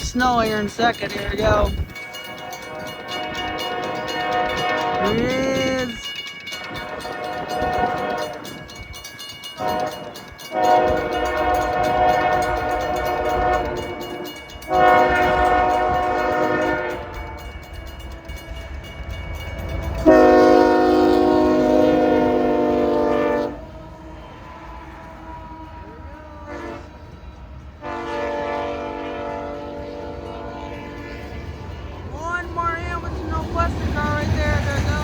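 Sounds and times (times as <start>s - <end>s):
low rumble of train: 0.0s - 35.0s
locomotive air horn blasts: 2.4s - 8.7s, 9.6s - 17.4s, 20.0s - 27.2s, 27.8s - 31.4s.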